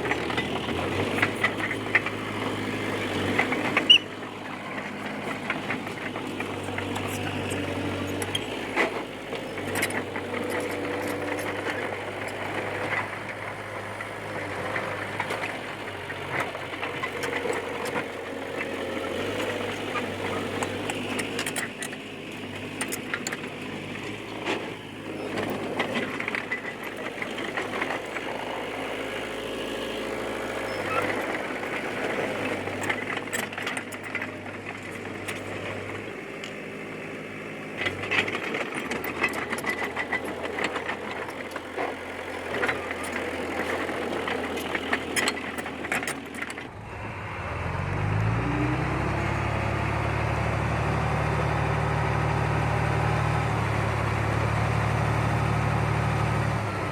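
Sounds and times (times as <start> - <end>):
bulldozer diesel engine: 0.0 - 56.9
metallic clanks and rattles: 37.8 - 46.7.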